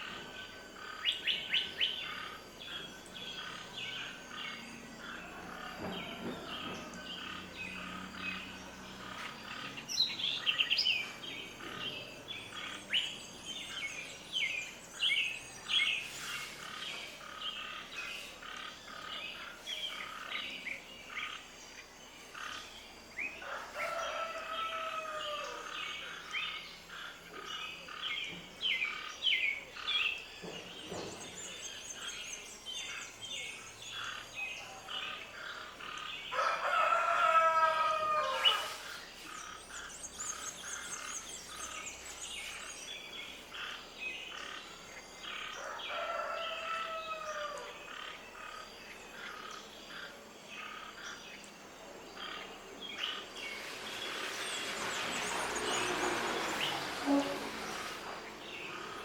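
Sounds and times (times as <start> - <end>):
birds chirping: 0.0 - 59.0
low bird call sliding down: 53.4 - 59.0.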